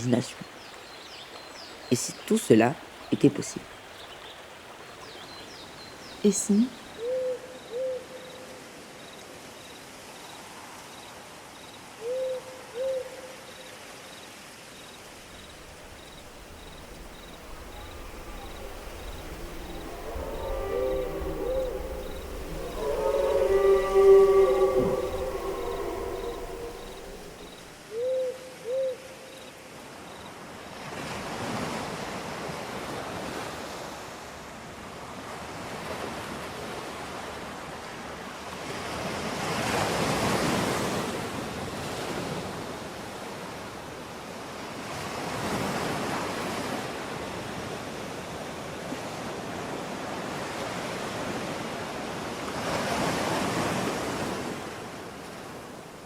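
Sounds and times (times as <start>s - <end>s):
sea waves washing in: 15.1s - 27.7s.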